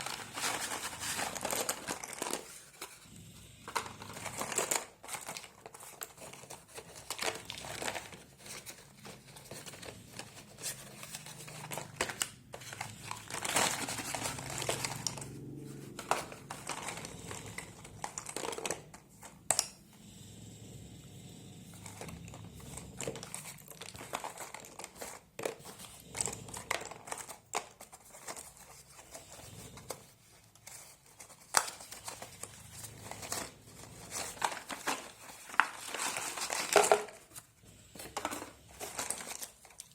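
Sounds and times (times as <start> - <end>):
packaging crinkling and crackling: 0.0 - 19.8, 21.5 - 39.9.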